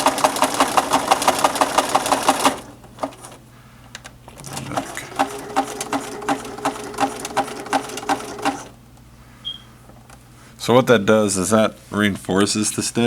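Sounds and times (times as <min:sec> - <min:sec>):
sewing machine stitching: 0:00.0 - 0:03.4, 0:04.3 - 0:08.8
motor hum: 0:04.2 - 0:08.8.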